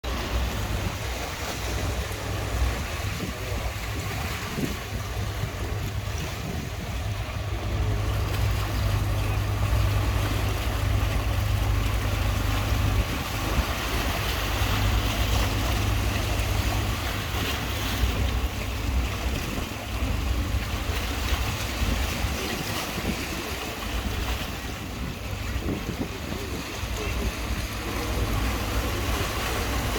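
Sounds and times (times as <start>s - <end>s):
sea washing: 0.0s - 29.9s
wind buffeting microphone: 0.0s - 29.9s.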